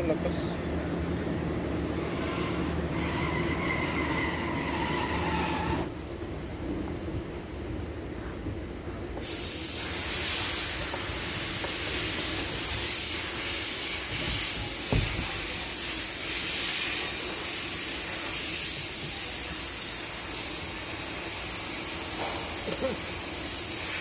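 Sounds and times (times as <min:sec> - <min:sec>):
pressurized jet hissing: 0:09.2 - 0:24.0.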